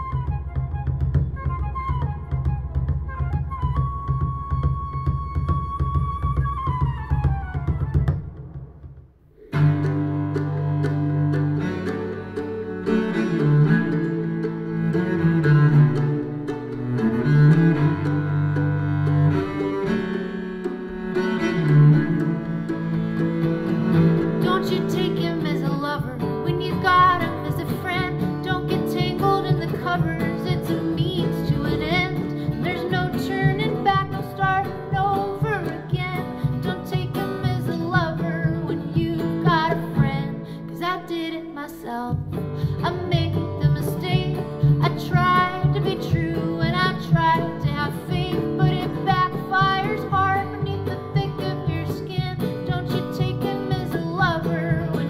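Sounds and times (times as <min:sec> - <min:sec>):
plucked and bowed strings: 0:00.0 - 0:08.5, 0:09.4 - 0:55.0
person singing: 0:23.9 - 0:55.0.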